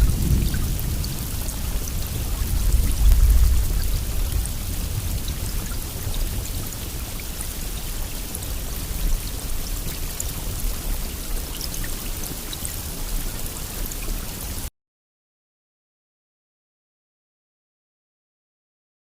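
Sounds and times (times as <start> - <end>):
raindrop ticks: 0.0 - 12.6
steady rain hiss: 0.0 - 14.7.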